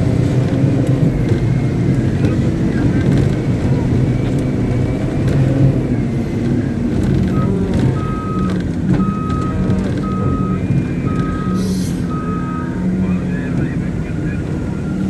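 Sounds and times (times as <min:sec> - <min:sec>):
diesel engine running: 0:00.0 - 0:15.0
reverse alarm beeping: 0:07.3 - 0:12.9
short hiss: 0:11.6 - 0:12.1.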